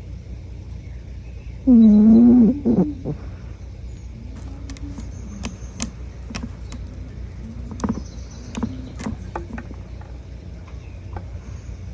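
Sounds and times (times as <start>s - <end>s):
cat snoring: 1.7s - 3.4s
sharp clicks: 4.4s - 6.9s.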